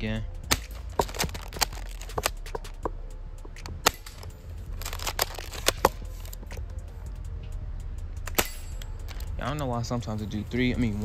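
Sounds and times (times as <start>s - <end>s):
airsoft shotgun racking and firing: 0.5s - 2.8s, 3.6s - 6.5s.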